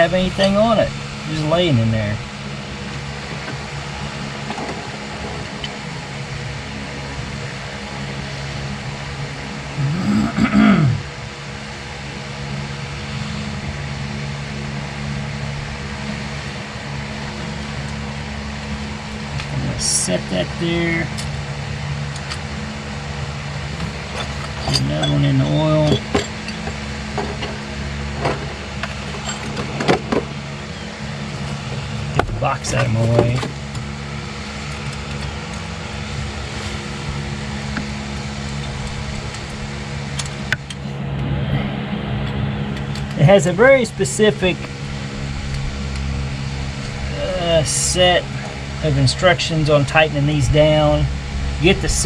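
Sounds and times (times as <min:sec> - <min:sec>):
engine parts clicking and knocking: 0:00.0 - 0:07.6, 0:12.6 - 0:41.3
steady machine hum: 0:00.0 - 0:52.0.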